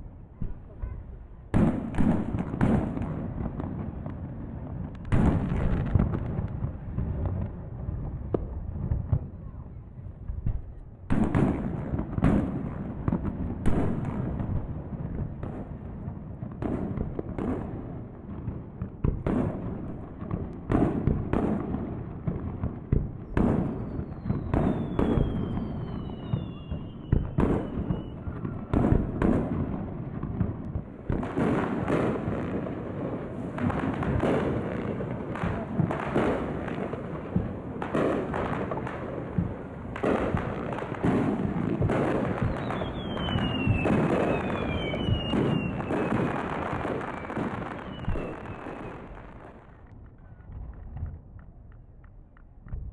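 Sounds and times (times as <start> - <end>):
fireworks crackling: 0.0 - 9.4, 10.3 - 52.9
firework shells booming: 4.9 - 6.7, 18.4 - 49.8
falling firework whistles: 23.6 - 28.9, 41.9 - 49.4.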